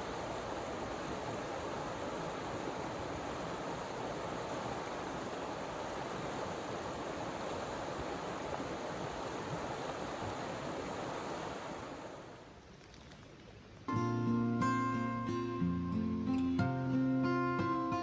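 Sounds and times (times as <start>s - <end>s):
rushing water: 0.0s - 13.9s
wind: 0.0s - 18.0s.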